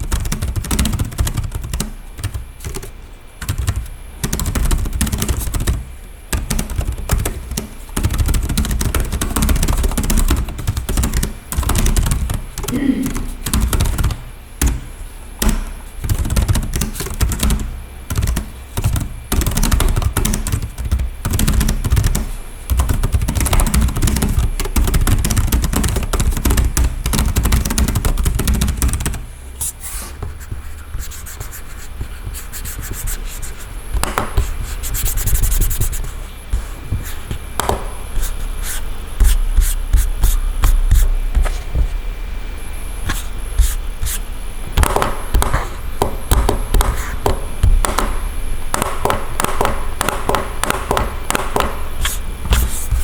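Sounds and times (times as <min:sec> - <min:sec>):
laptop keyboard typing: 0:00.0 - 0:29.3, 0:30.3 - 0:41.6, 0:44.8 - 0:53.0.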